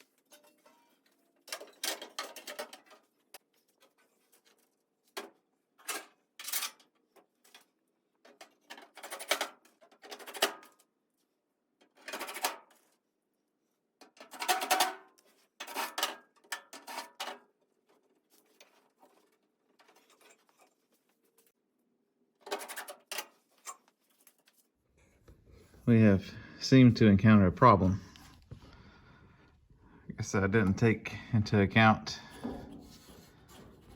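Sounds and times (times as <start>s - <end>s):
sheet metal scraping and clattering: 32.2s - 33.9s.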